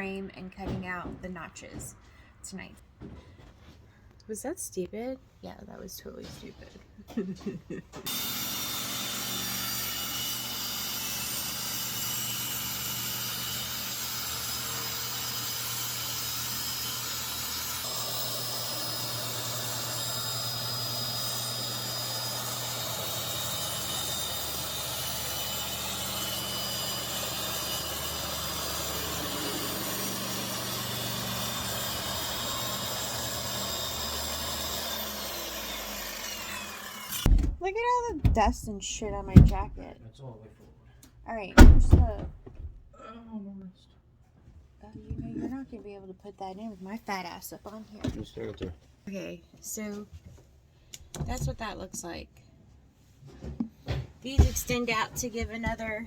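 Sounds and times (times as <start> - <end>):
electric power tool cutting wood: 8.0 - 37.4.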